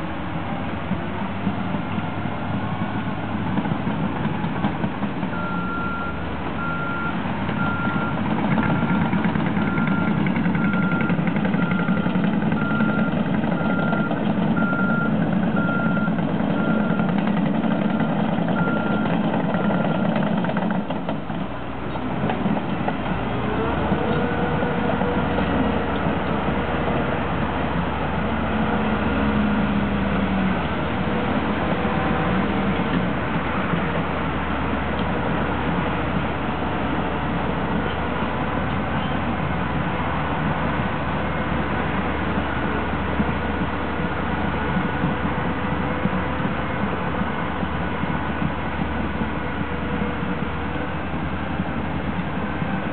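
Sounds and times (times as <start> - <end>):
diesel machinery running: 0.0 - 52.9
reversing alarm beeping: 5.4 - 8.2, 8.9 - 17.2, 18.0 - 20.0.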